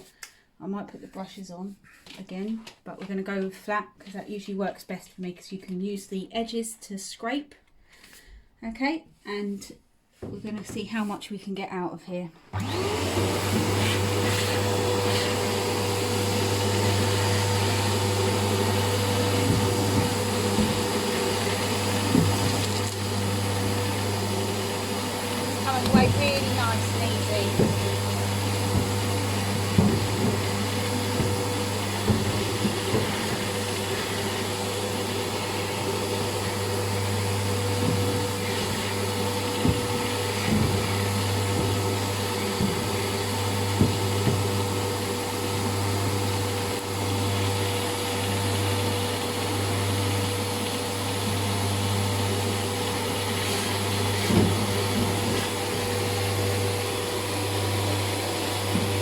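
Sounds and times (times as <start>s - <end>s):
vacuum cleaner running: 12.5s - 59.0s
nozzle knocking and scraping: 13.5s - 44.6s, 53.3s - 59.0s.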